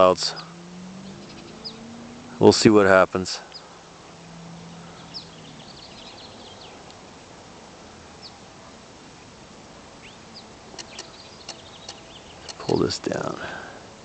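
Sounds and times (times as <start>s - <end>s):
low steady hum: 0.0s - 14.0s
outdoor background hiss: 0.0s - 14.0s
high bird chirps: 0.2s - 2.4s, 3.5s - 6.9s, 10.0s - 12.9s
sharp ticks: 10.7s - 12.9s.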